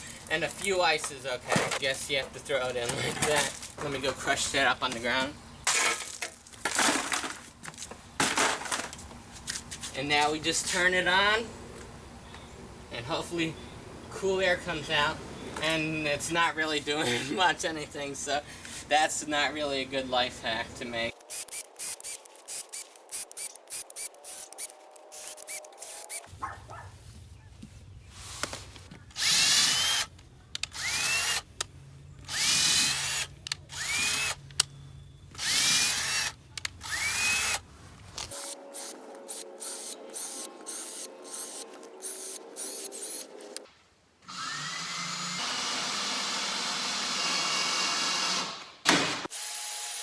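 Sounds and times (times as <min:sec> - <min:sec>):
power drill whining: 0:21.3 - 0:26.3, 0:29.1 - 0:30.1, 0:30.7 - 0:31.4, 0:32.3 - 0:34.4, 0:35.4 - 0:37.6, 0:38.3 - 0:43.6, 0:44.2 - 0:50.0.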